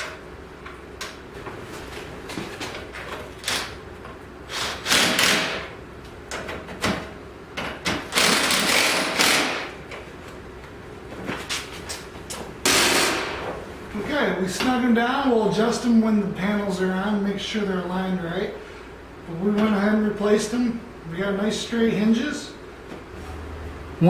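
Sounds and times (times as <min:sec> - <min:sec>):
ratchet clicking: 0:08.1 - 0:09.7.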